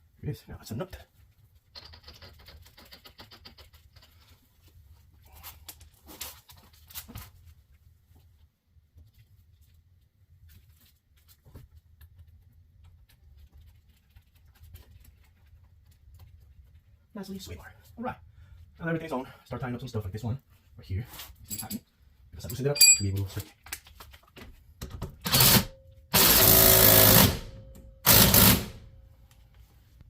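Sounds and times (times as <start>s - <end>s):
metallic knocks and clinks: 21.5s - 21.8s, 22.5s - 23.2s.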